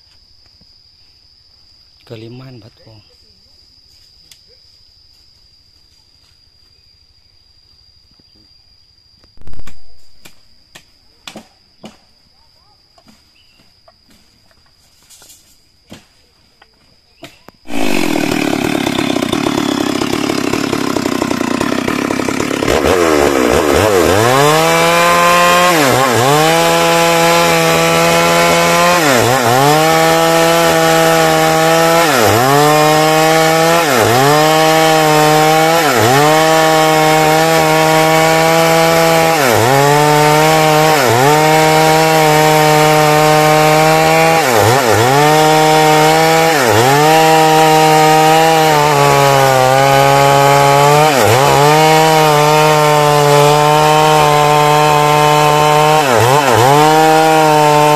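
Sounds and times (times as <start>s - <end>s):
chainsaw cutting wood: 9.4s - 10.4s, 17.2s - 57.9s.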